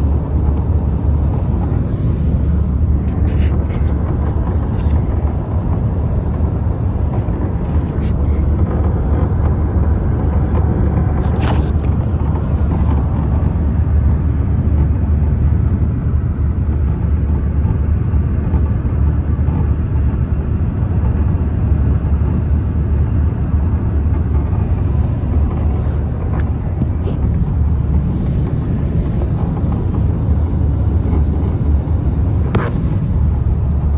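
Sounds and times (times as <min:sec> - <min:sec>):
car road and engine rumble: 0:00.0 - 0:18.1, 0:23.9 - 0:30.5, 0:31.8 - 0:33.9.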